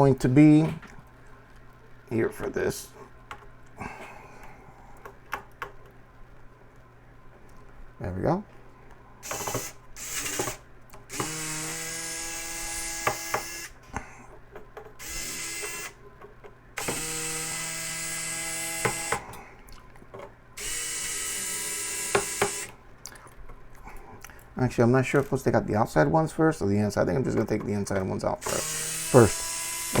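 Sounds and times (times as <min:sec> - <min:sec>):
cordless drill motor whine: 0:09.2 - 0:13.8, 0:15.0 - 0:16.0, 0:16.8 - 0:19.3, 0:20.6 - 0:22.7, 0:28.4 - 0:30.0.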